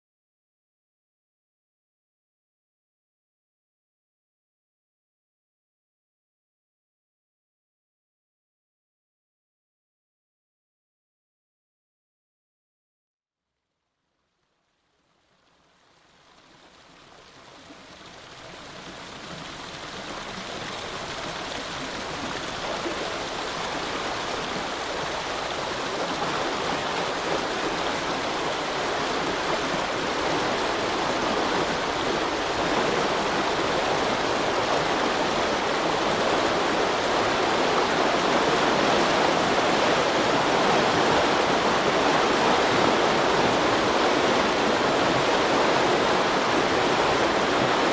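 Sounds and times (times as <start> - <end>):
water rushing through lock: 15.5 - 47.9.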